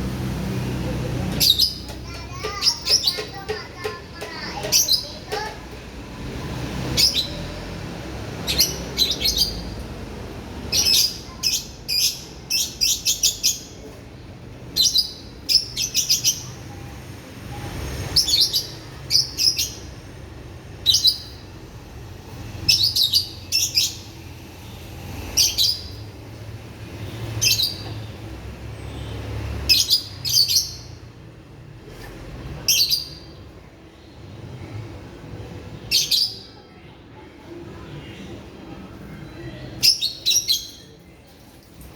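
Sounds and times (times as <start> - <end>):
bird chirping high-pitched: 1.3 - 5.6, 7.0 - 7.6, 39.7 - 41.0.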